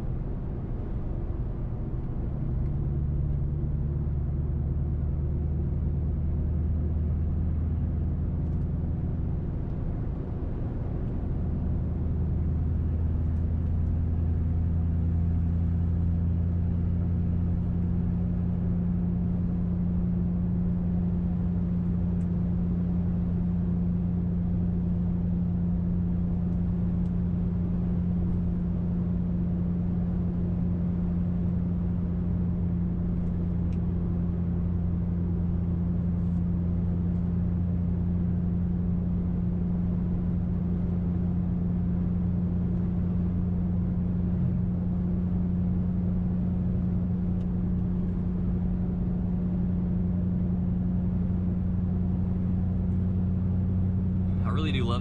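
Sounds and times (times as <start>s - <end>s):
car engine low drone: 0.0s - 55.0s
road noise: 52.1s - 55.0s.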